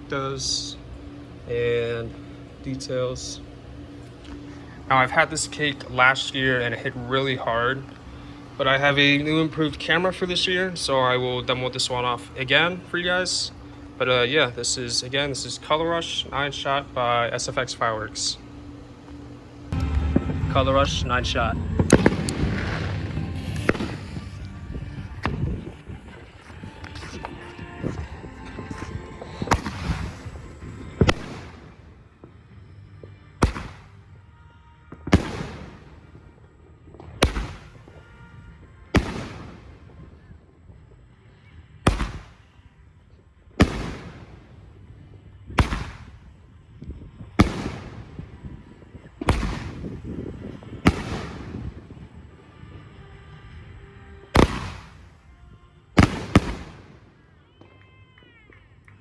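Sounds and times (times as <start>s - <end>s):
firework shells banging: 19.8s - 31.6s.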